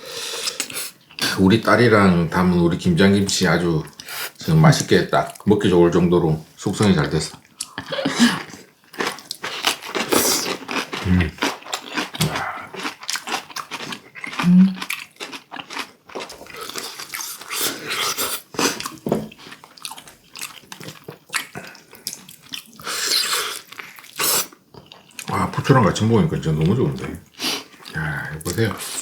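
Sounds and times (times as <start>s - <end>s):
chewing and crunching food: 7.2s - 29.0s.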